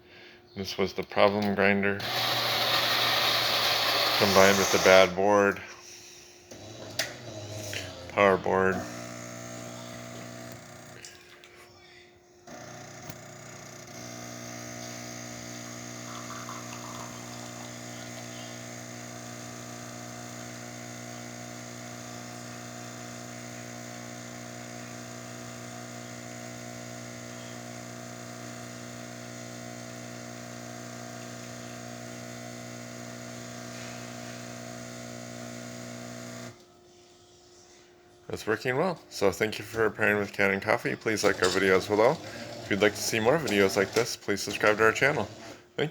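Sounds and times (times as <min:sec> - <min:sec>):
espresso grinder motor hum: 0:02.0 - 0:05.2, 0:06.5 - 0:11.0, 0:12.5 - 0:36.6, 0:41.1 - 0:45.6.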